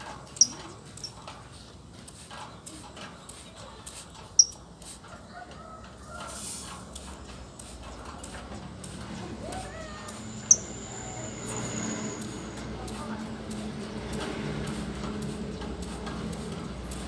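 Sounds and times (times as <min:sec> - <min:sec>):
lovebird chirps: 0:10.3 - 0:12.3.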